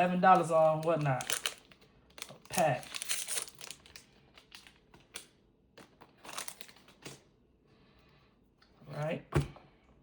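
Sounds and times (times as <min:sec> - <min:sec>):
foil wrapper crinkling: 0:00.0 - 0:07.2.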